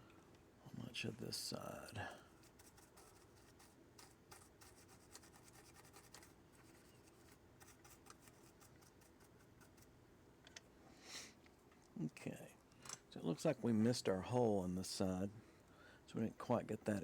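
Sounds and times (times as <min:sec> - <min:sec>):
small clicks and scratches: 0:02.3 - 0:10.7.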